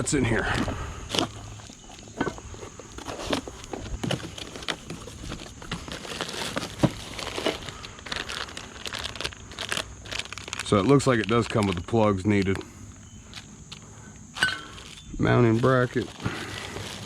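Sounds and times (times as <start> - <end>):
packing material crinkling: 0.0 - 13.9, 14.6 - 17.0.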